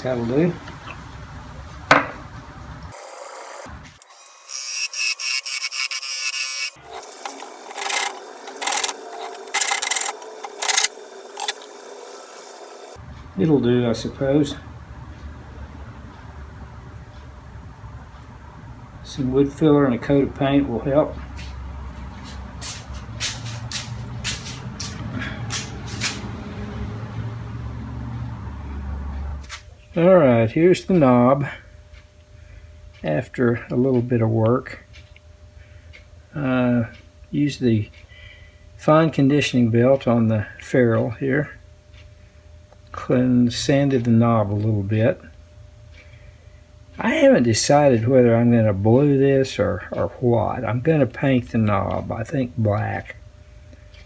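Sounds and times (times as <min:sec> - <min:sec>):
electric motor humming: 0:02.9 - 0:13.0
rasp scraping on wood: 0:04.4 - 0:13.0.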